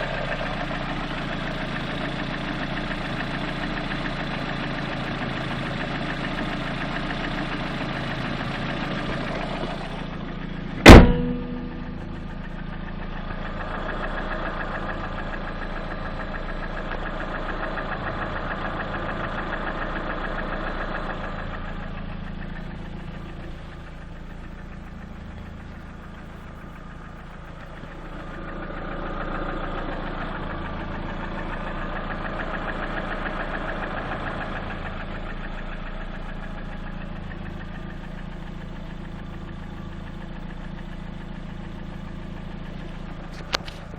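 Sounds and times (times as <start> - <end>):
car engine idling with knocking: 0.0 - 43.9
loud sharp bang: 10.8 - 12.3.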